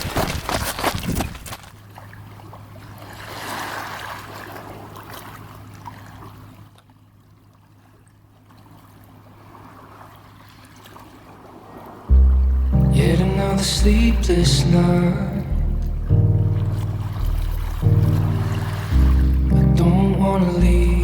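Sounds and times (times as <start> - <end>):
water lapping softly: 1.7 - 20.9
faint low hum: 12.1 - 21.0.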